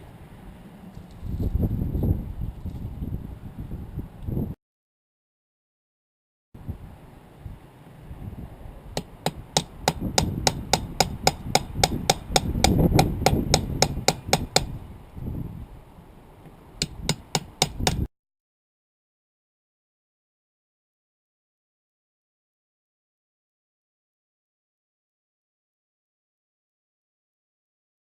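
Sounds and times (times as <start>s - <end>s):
rapid hammer blows: 9.0s - 14.8s, 16.8s - 18.1s.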